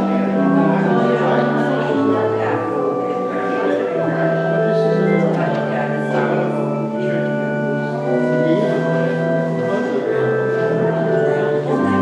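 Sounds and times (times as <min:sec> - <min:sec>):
organ chords: 0:00.0 - 0:12.0.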